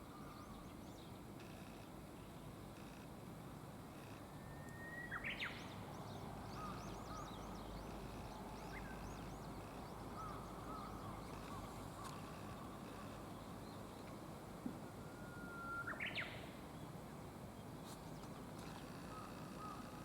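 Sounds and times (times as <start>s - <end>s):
songbirds chirping and whistling: 4.4s - 14.1s, 15.0s - 16.5s.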